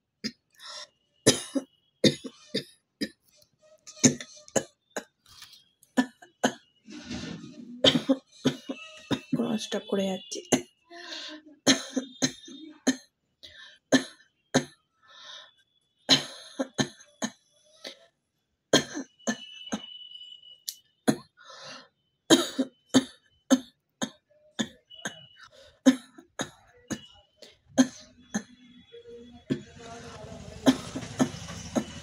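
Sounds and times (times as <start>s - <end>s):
person coughing: 1.3s - 3.2s, 4.0s - 5.1s, 7.8s - 9.4s, 11.6s - 13.0s, 16.1s - 17.4s, 18.8s - 19.9s, 22.3s - 28.6s, 30.6s - 32.0s.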